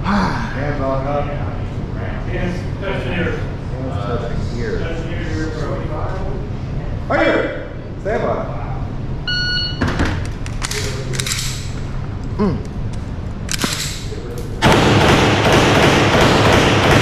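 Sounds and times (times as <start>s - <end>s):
shot timer start beep: 9.3s - 9.8s.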